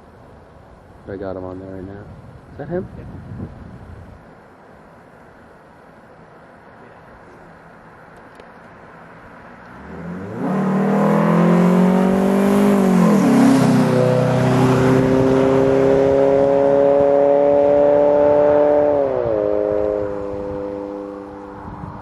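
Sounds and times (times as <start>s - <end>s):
car engine accelerating hard: 9.6s - 22.0s.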